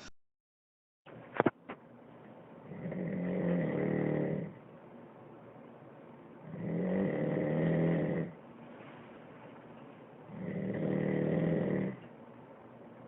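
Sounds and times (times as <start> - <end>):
man snoring: 2.7 - 4.6, 6.5 - 8.4, 10.3 - 12.0.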